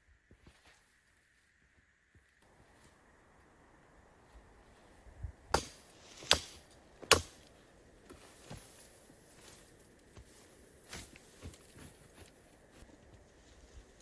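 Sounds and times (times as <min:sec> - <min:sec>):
sharp knocks: 0:05.6 - 0:07.4.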